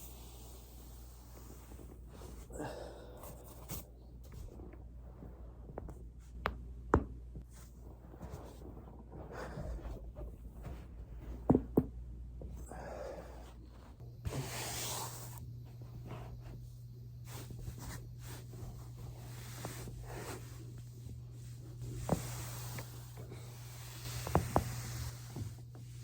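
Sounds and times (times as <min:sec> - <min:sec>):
body rustling on foam roller: 0:07.4 - 0:11.7, 0:13.2 - 0:26.0.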